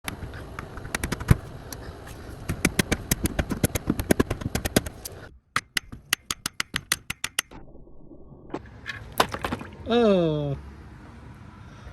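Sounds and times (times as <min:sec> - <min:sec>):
rapid sharp clicks: 0:00.9 - 0:07.5.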